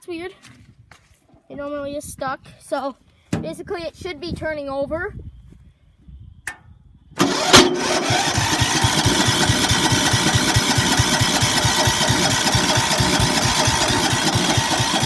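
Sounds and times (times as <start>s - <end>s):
electric starter cranking engine: 7.2s - 15.0s.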